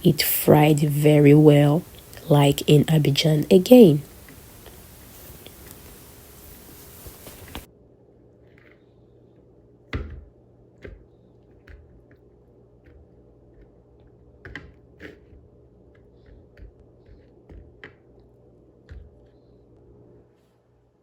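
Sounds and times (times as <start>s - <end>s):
faint steady hum: 0.0s - 9.7s.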